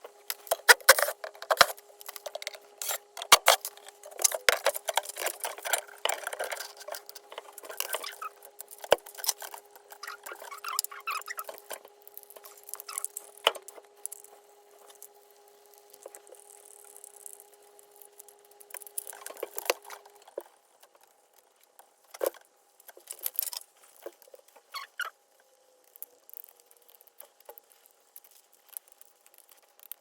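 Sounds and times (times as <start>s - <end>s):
small hard parts clicking: 0.2s - 14.4s.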